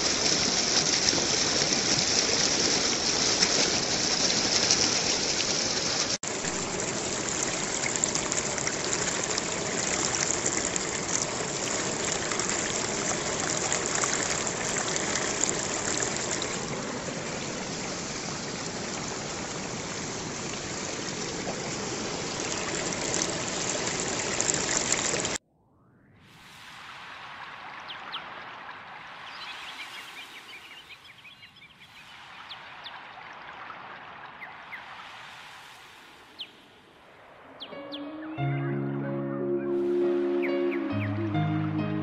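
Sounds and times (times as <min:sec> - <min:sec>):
running water rushing: 0:00.0 - 0:25.4, 0:26.4 - 0:37.9.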